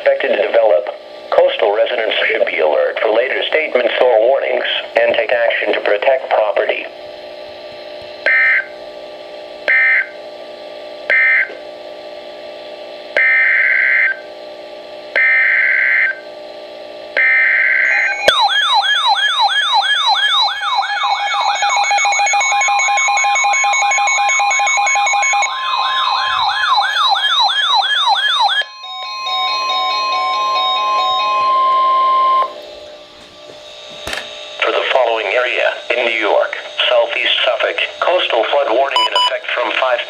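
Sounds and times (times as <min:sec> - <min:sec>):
warbling siren-like alert tone: 0:17.2 - 0:32.6
alert data bursts: 0:17.3 - 0:32.6, 0:34.3 - 0:40.0
steady tone: 0:28.7 - 0:33.1.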